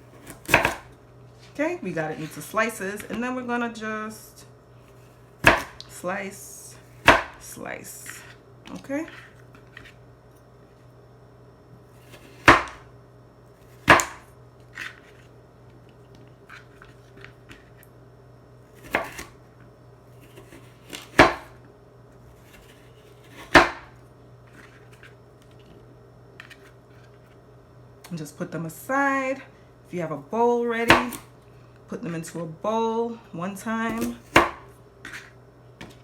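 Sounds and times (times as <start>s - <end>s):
knife striking cutting board: 5.4s - 5.8s, 7.1s - 7.4s, 12.4s - 12.8s, 13.8s - 14.2s, 20.9s - 21.5s, 23.3s - 24.0s, 33.9s - 35.2s.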